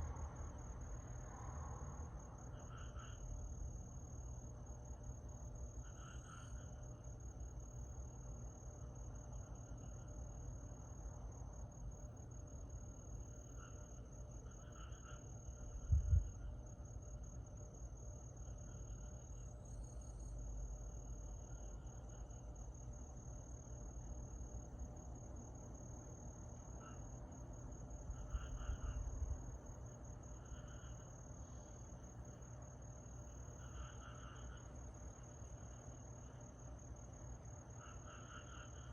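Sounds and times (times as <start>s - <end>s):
insects trilling: 2.2s - 38.9s
insect chirping calls: 2.3s - 4.3s, 5.0s - 7.6s, 9.0s - 38.9s.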